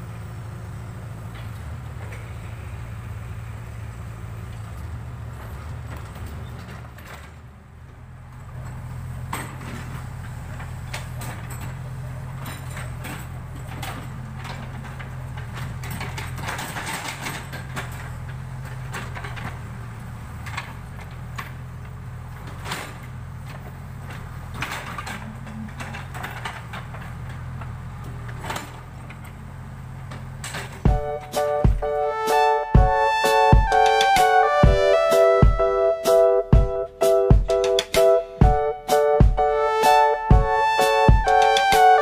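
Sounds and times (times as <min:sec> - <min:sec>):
diesel engine under load: 0:00.0 - 0:42.0
machine clanking and knocking: 0:04.4 - 0:35.6.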